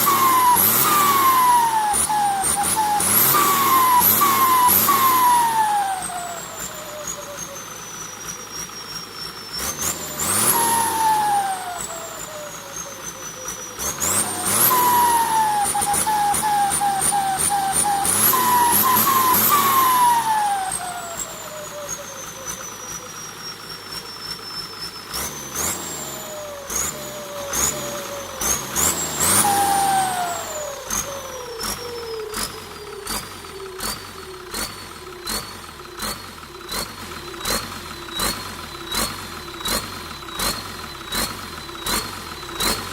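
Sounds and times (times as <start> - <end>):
turbo flutter chirp: 0.0 - 25.0
engine revving: 0.0 - 42.9
turbocharger whistling: 0.0 - 42.9.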